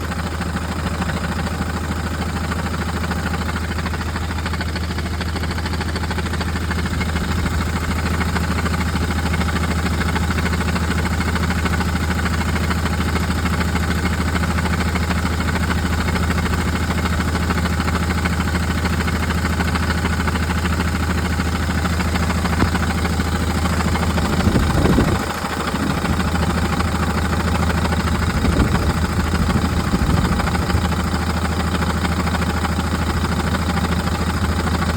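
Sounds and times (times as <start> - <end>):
van engine idling: 0.0 - 34.9.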